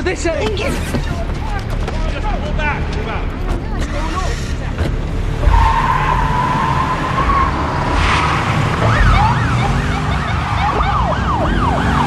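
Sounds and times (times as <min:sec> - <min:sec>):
low rumble of vehicles: 0:00.0 - 0:12.0
police sirens yelping: 0:05.4 - 0:12.0.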